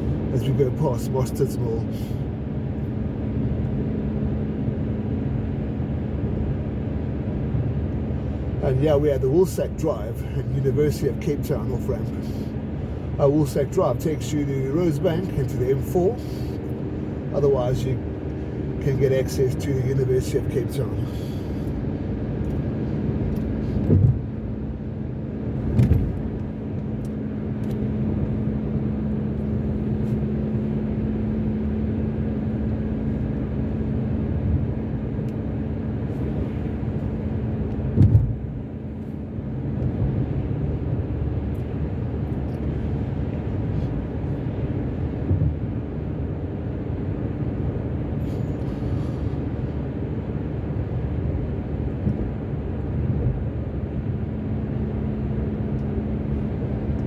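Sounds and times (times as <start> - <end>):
car road and engine noise: 0.0 - 57.0
thump inside car: 23.8 - 24.3, 25.6 - 26.3, 37.9 - 38.4, 45.3 - 45.6.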